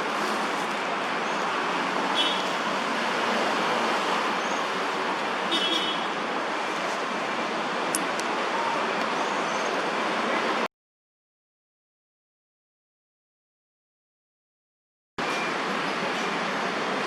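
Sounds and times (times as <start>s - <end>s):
city road traffic hum: 0.0s - 10.7s, 15.2s - 17.0s.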